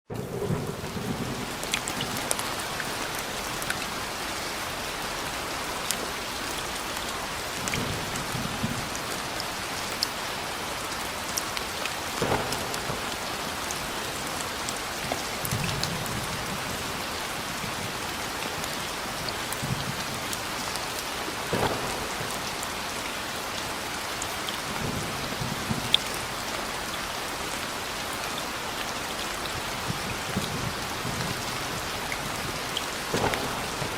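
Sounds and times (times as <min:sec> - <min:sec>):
low thunder rumbles: 0:00.1 - 0:05.2, 0:29.5 - 0:33.9
steady rain falling: 0:00.1 - 0:33.9.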